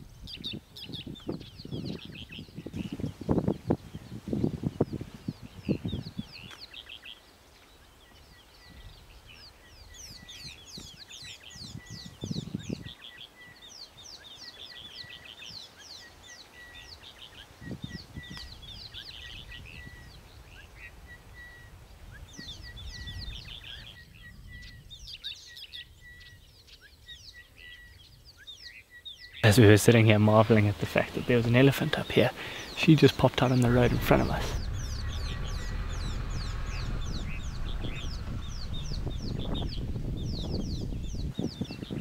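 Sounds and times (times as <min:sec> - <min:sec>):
wild birds chirping: 0:00.0 - 0:42.0
brief low rumbles: 0:32.4 - 0:41.4.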